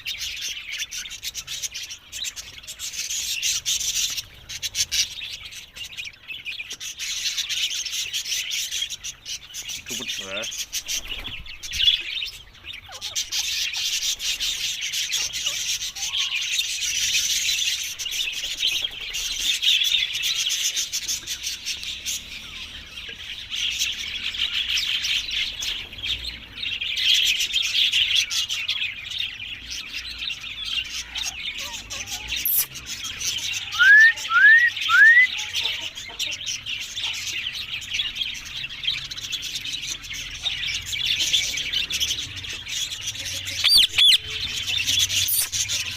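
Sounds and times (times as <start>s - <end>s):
parakeets chattering and chirping: 0.0s - 45.9s
loud short rising bird calls: 32.4s - 32.7s, 33.7s - 35.4s, 43.6s - 44.2s.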